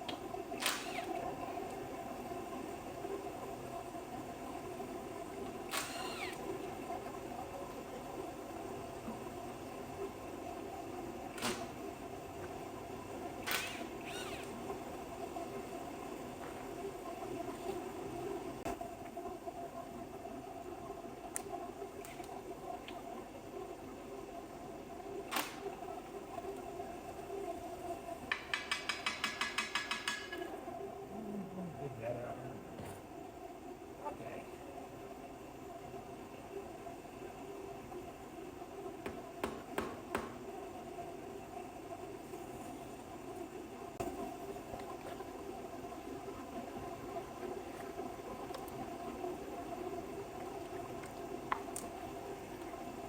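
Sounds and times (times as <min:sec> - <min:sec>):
shop heater humming: 0:00.0 - 0:53.0
short falling squeak: 0:13.6 - 0:14.6.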